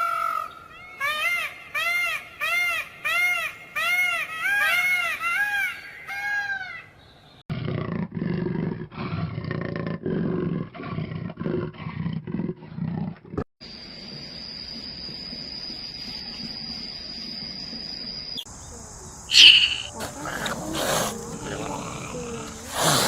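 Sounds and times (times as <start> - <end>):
animal high cries: 19.3 - 22.5
animal low growling calls: 19.3 - 23.0.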